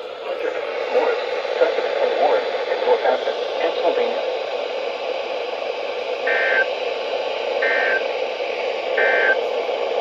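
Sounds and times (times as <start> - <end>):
radio receiver hiss: 5.8 - 9.7.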